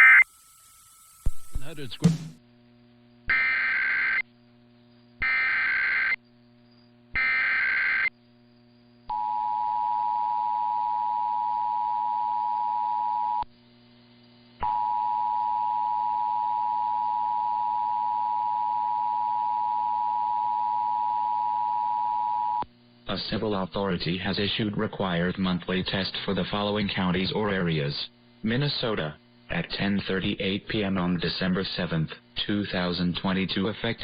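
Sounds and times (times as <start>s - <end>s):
two-tone attention signal: 0.0s - 2.2s
warbling data bursts: 0.0s - 2.2s.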